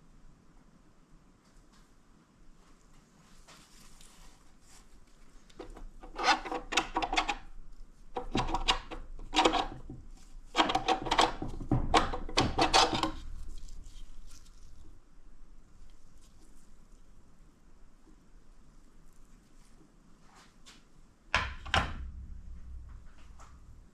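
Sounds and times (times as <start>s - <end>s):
metal parts scraping together: 5.6s - 7.5s, 8.2s - 13.6s.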